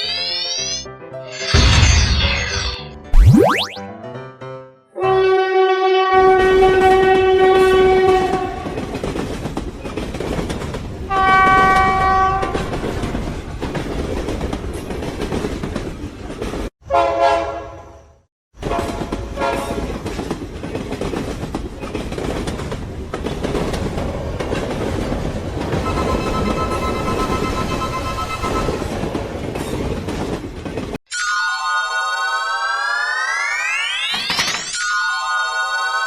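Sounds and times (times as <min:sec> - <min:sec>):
train horn blasts: 0:05.1 - 0:08.7, 0:11.1 - 0:12.6, 0:25.8 - 0:29.1
train rumbling on rails: 0:06.4 - 0:16.7, 0:18.6 - 0:31.0.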